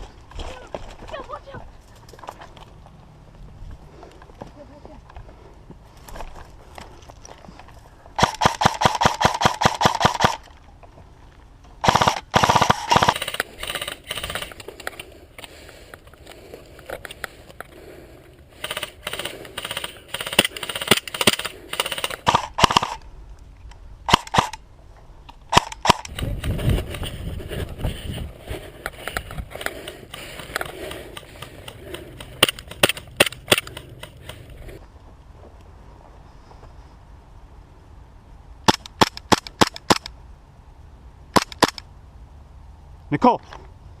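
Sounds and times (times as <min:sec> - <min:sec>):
airsoft guns firing bursts: 0:08.2 - 0:10.4, 0:11.8 - 0:15.1, 0:18.5 - 0:23.0, 0:28.9 - 0:34.5.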